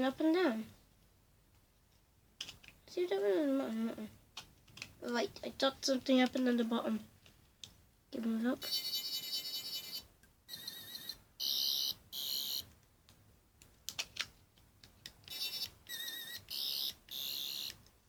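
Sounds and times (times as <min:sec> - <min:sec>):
toy clicks: 0:08.6 - 0:12.7, 0:15.2 - 0:17.9
toy warbling electronic buzz: 0:08.6 - 0:12.7, 0:15.3 - 0:17.8.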